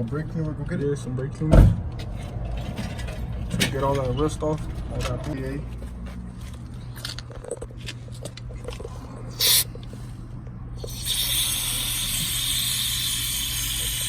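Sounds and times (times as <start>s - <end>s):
aerosol can spraying: 9.4s - 9.7s, 10.8s - 14.0s.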